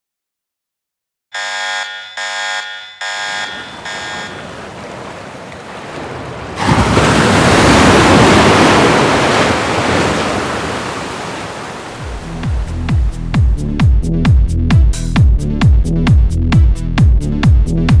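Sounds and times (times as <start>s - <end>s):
electronic beep tones: 1.4s - 4.6s
rushing water: 3.3s - 13.4s.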